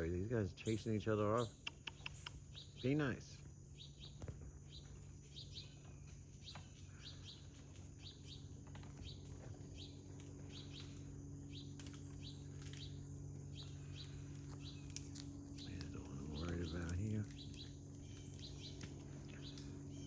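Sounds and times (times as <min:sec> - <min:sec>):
birds chirping: 0:00.0 - 0:20.0
steady low hum: 0:00.0 - 0:20.0.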